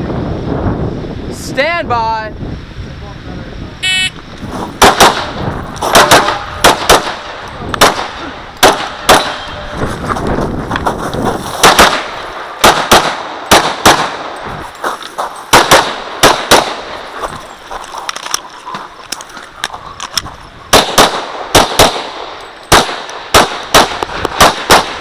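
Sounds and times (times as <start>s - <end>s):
pistol shots: 4.8s - 9.5s, 11.6s - 14.4s, 15.5s - 17.0s, 20.7s - 25.0s.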